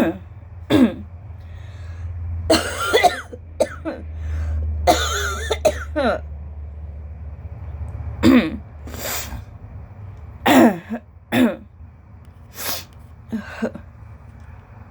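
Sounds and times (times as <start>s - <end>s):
woman coughing: 0.0s - 1.1s, 2.5s - 4.0s, 4.9s - 6.2s, 8.2s - 8.6s, 10.5s - 11.7s
noisy breaths drawn in: 1.4s - 2.4s, 4.1s - 4.8s, 8.8s - 9.6s, 12.5s - 13.6s.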